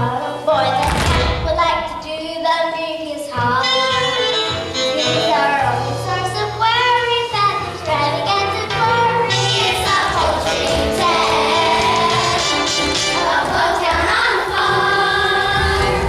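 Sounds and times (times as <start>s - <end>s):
musical accompaniment with bass line: 3.3s - 16.0s
children singing: 4.9s - 16.0s.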